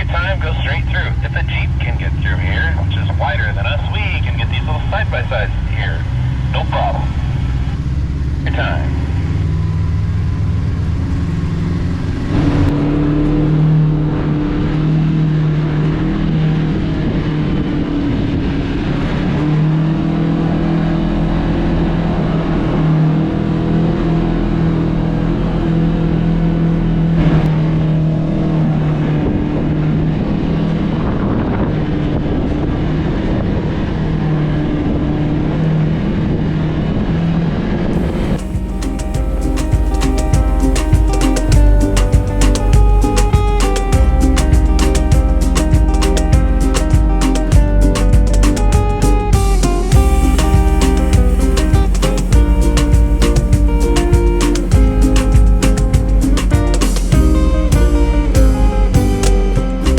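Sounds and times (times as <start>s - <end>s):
off-road vehicle engine running: 0.0s - 59.9s.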